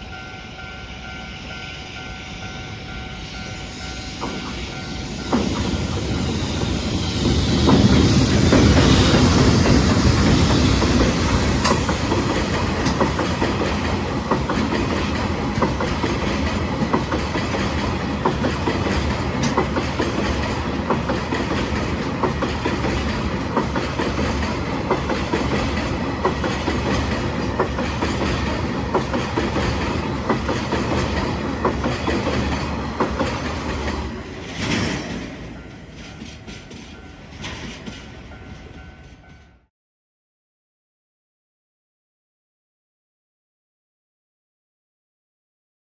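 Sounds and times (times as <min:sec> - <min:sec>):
freight train rolling past: 0:00.0 - 0:39.7
wheels clacking over rail joints: 0:05.2 - 0:39.3.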